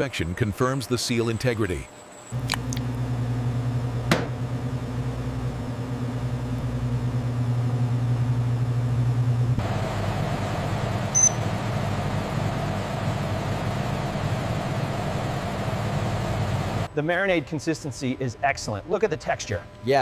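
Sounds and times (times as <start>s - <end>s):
factory machinery hum: 0.0s - 20.0s
high beep: 11.1s - 11.5s.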